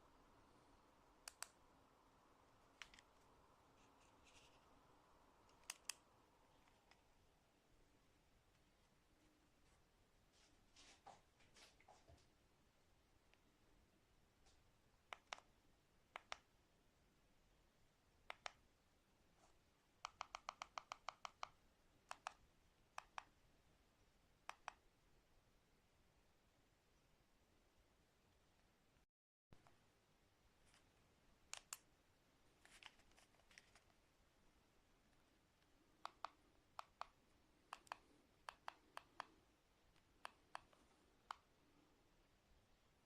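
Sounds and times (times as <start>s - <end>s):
faint sharp clicks: 1.2s - 1.6s, 2.7s - 4.6s, 5.4s - 7.1s, 14.5s - 15.5s, 16.1s - 16.5s, 18.3s - 18.6s, 20.0s - 23.4s, 24.4s - 24.8s, 31.5s - 31.9s, 35.1s - 41.5s
sharp small clicks: 1.2s - 1.6s, 5.4s - 7.0s, 31.5s - 31.9s.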